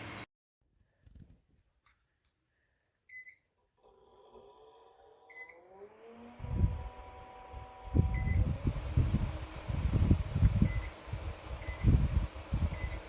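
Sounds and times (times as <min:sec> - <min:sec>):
fan air buffeting microphone: 0:00.0 - 0:00.2, 0:06.3 - 0:13.0
fan motor whine: 0:00.0 - 0:00.3, 0:05.3 - 0:13.0.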